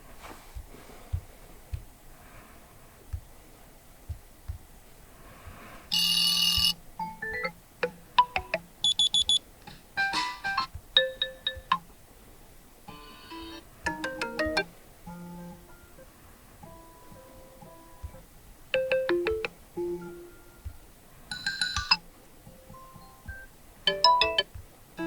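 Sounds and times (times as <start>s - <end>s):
high beeps: 5.9s - 7.5s, 8.2s - 9.4s, 21.3s - 22.0s
electronic chimes and melodies: 18.8s - 20.6s, 21.3s - 22.0s, 22.7s - 24.5s.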